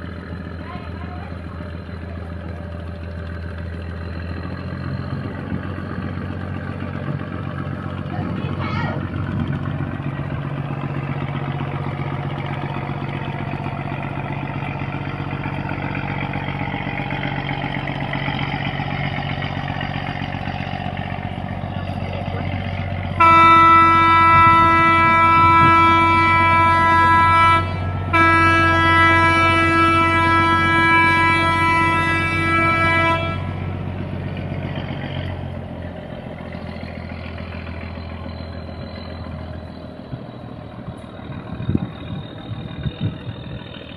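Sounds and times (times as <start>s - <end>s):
diesel engine droning: 0.0s - 43.9s
boat horn blasts: 23.0s - 34.2s.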